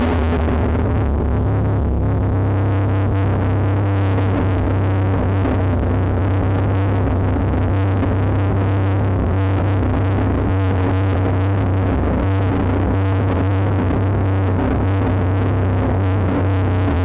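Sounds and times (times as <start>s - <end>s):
synthesizer drone: 0.0s - 10.4s.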